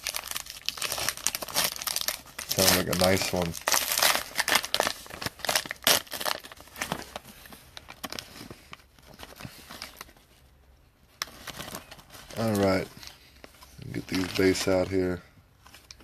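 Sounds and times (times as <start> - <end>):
wrapper tearing and crinkling: 0.0 - 10.2, 13.8 - 15.2.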